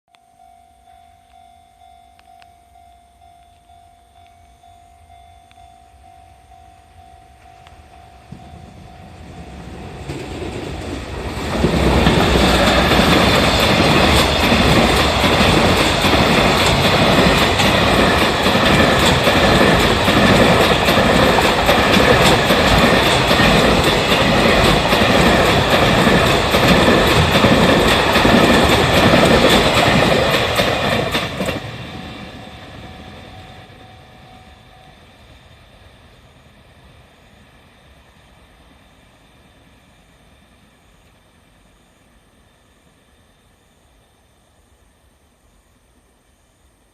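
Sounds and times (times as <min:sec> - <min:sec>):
freight train passing: 0:00.4 - 0:45.4
wheels clacking over rails: 0:08.3 - 0:33.2.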